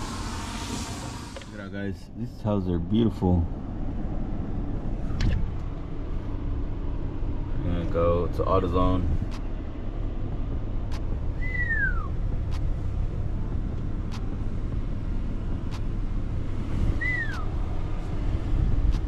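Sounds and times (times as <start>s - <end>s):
vehicle rumbling: 0.0s - 19.0s
falling whistled notes: 11.4s - 12.2s, 17.0s - 17.5s.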